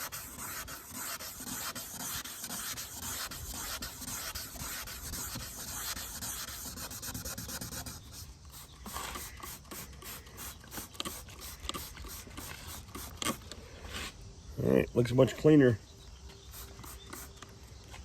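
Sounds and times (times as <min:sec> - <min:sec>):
pad sanding plastic: 0:00.0 - 0:14.2.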